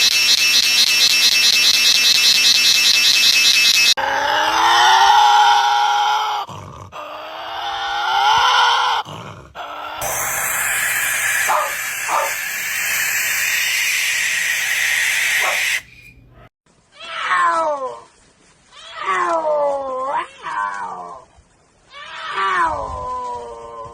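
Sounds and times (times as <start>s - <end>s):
cat-like yowls: 4.0s - 15.9s, 21.9s - 23.9s
harsh hissing screech: 10.0s - 16.2s.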